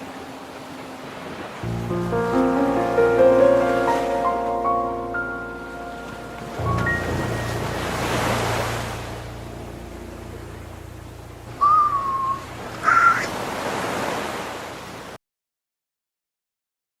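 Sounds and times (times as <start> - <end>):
sea waves washing in: 0.0 - 15.2
diver's whistling exhalations: 11.6 - 13.3.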